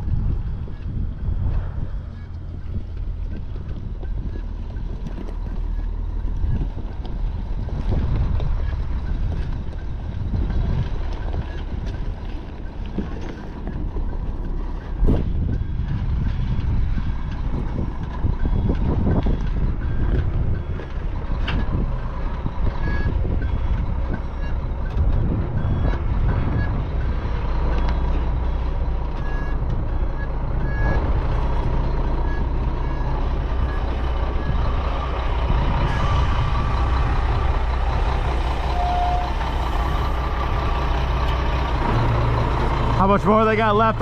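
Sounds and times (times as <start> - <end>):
diesel engine working: 0.0 - 44.0
reversing alarm beeps: 18.3 - 20.8, 22.7 - 31.0, 32.2 - 35.0, 35.8 - 37.0, 38.6 - 40.2.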